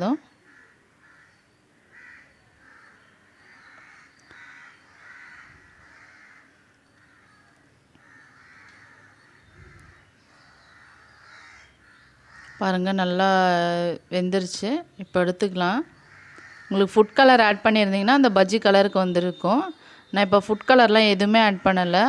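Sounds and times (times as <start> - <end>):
crows cawing faintly: 0.3 - 12.9, 15.8 - 17.9, 21.2 - 22.0.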